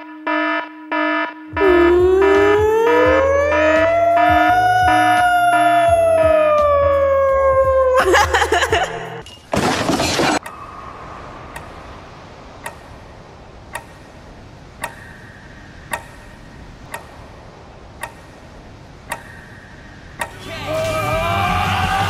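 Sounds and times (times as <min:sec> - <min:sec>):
small clock ticking: 0:01.6 - 0:06.3, 0:11.6 - 0:11.8, 0:12.5 - 0:20.4.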